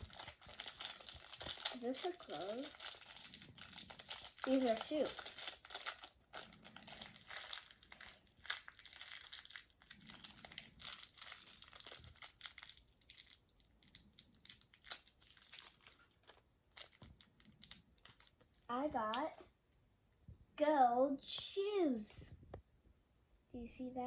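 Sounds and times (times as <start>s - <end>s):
plastic packaging crinkling and tearing: 0.0s - 18.5s.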